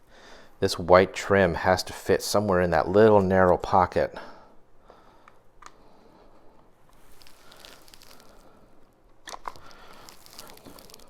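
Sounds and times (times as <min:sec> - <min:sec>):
crinkly rustling: 0:06.9 - 0:11.0
plastic parts clicking: 0:09.2 - 0:09.8.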